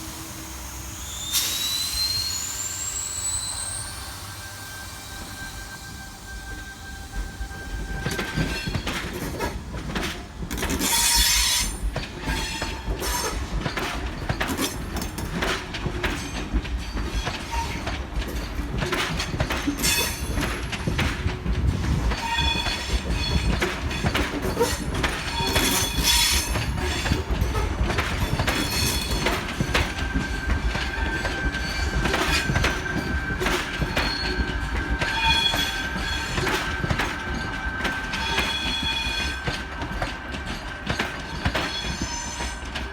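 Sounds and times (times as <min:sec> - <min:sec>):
steady high whine: 0:00.0 - 0:08.2
train wheels clacking: 0:00.7 - 0:42.9
high-pitched wheel squeal: 0:00.8 - 0:08.9, 0:22.2 - 0:27.7, 0:34.0 - 0:36.6.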